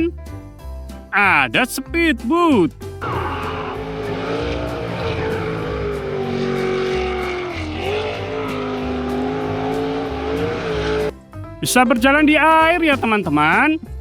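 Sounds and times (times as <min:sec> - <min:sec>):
motor running: 0:03.0 - 0:11.1.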